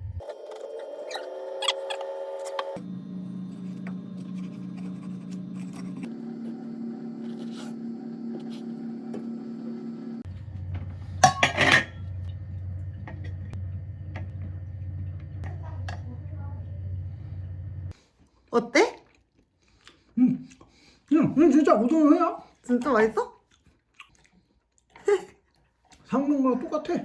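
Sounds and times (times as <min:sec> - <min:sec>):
low steady hum: 0:02.7 - 0:18.0.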